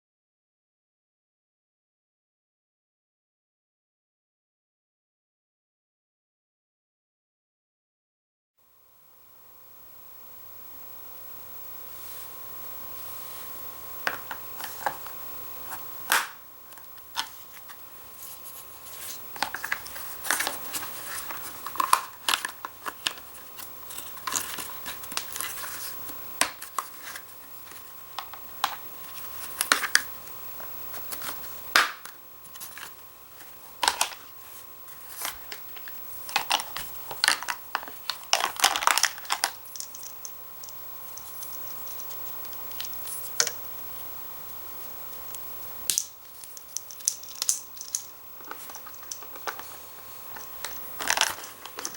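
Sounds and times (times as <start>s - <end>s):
crinkling and rustling: 13.4s - 43.5s, 46.3s - 51.9s.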